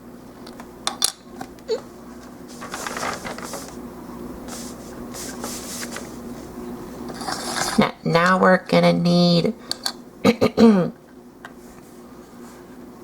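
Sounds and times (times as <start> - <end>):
steady low hum: 0.1 - 13.0
rustling and rattling: 2.5 - 3.8.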